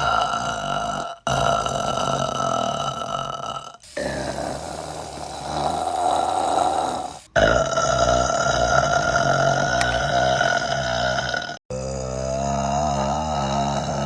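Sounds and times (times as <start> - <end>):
woman burping: 7.4 - 12.4.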